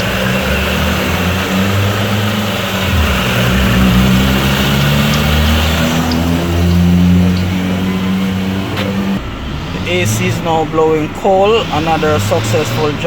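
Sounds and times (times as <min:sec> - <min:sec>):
air rushing: 0:00.0 - 0:09.2
car engine idling: 0:00.0 - 0:13.0.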